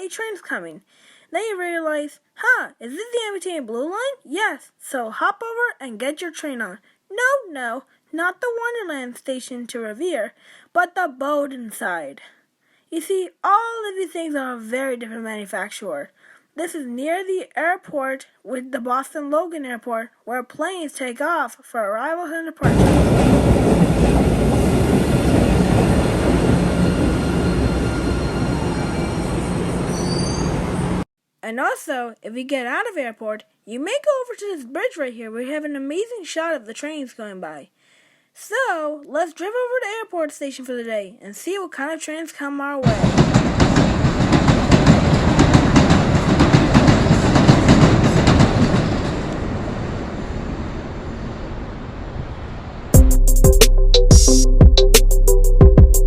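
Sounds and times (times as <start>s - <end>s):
train rumbling on rails: 22.6s - 31.0s, 42.8s - 52.9s.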